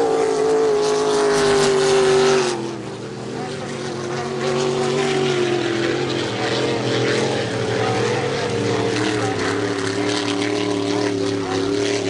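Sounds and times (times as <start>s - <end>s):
speedboat engines at high revs: 0.0s - 12.0s.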